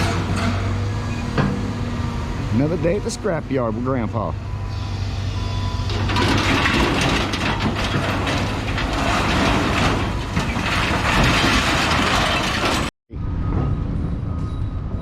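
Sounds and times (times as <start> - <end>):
heavy machinery engine running: 0.0 - 12.9
scrap metal clattering: 5.9 - 12.9.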